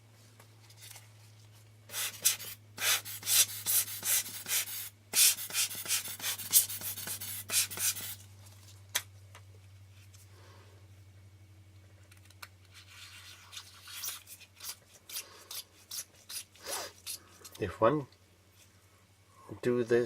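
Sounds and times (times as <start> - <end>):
low steady hum: 0.0 - 20.0
hands rubbing and scraping lens: 0.6 - 8.7, 12.1 - 17.6.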